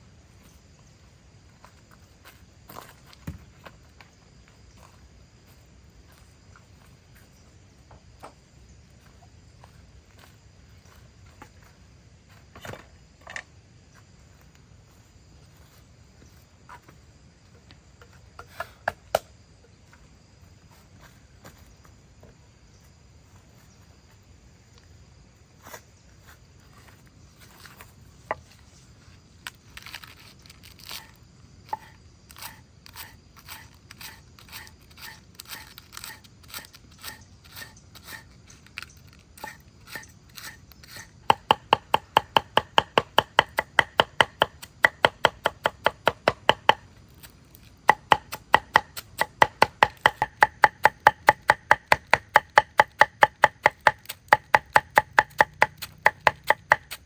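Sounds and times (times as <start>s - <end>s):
knife chopping on a board: 41.3s - 46.8s, 47.9s - 57.0s.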